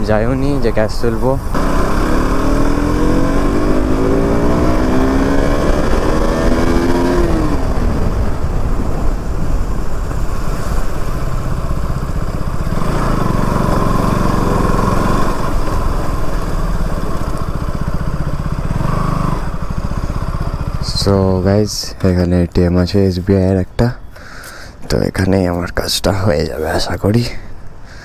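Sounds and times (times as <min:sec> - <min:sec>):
motorcycle engine accelerating: 0:01.4 - 0:21.5.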